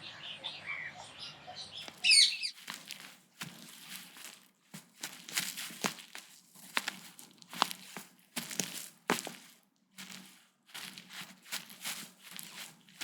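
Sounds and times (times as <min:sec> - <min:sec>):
quick chirping notes: 0:01.8 - 0:02.6
crackling and crunching clicks: 0:01.8 - 0:13.0.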